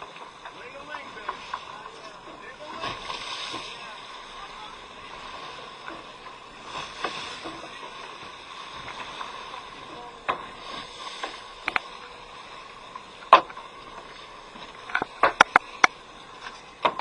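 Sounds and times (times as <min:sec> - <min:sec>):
clicks and knocks: 0:14.8 - 0:16.0.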